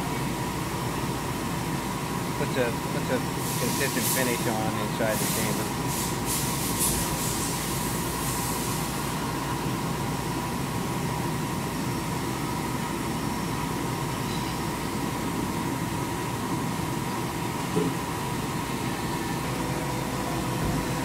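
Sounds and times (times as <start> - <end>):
machine humming with whine: 8.8 - 21.0.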